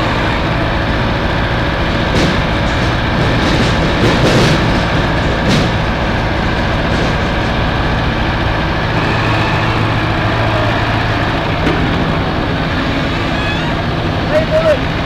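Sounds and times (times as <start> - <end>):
heavy machine engine running: 0.0 - 15.0.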